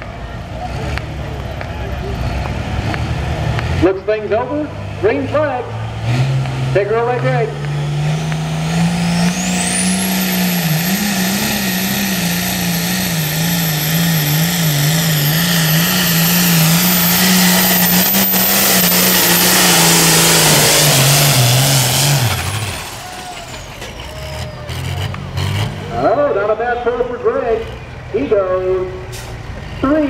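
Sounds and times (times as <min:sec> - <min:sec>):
tractor engine under full load: 0:00.0 - 0:30.0
high whine: 0:08.2 - 0:24.0.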